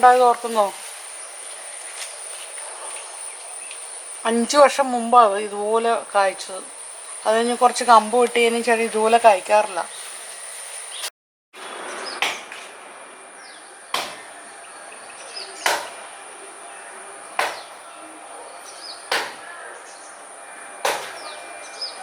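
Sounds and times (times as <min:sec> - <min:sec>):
high-pitched insect drone: 0:00.0 - 0:11.1
sharp ringing knocks: 0:20.8 - 0:21.4.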